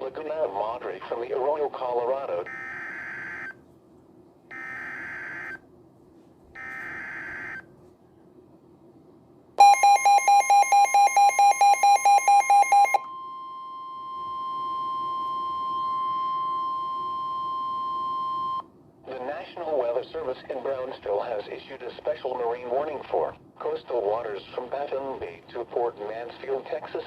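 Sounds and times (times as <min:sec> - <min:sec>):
rapid beeping: 0:09.6 - 0:13.0
steady attention tone: 0:09.6 - 0:18.7.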